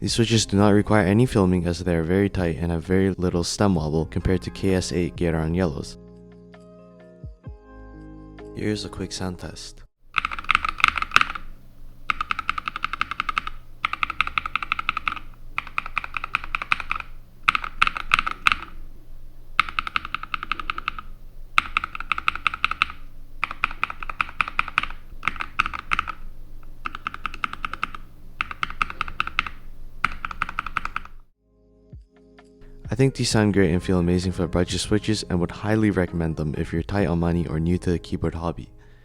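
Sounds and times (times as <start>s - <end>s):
mechanical keyboard typing: 10.1s - 31.3s.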